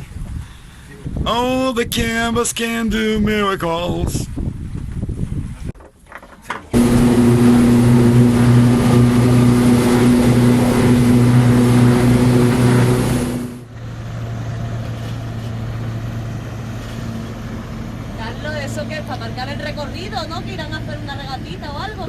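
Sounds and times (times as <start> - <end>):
motorboat engine running: 6.7 - 21.8
rush of wind and water: 6.8 - 13.6.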